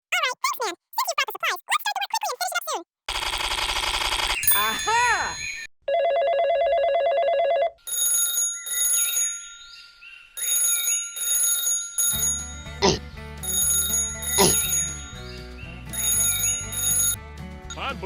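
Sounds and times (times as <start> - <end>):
electronic music with chime tones: 4.4 - 5.7
buzzing alarm bell ring: 7.8 - 12.6, 13.5 - 15.3, 16.0 - 17.2
bass line: 12.2 - 18.0.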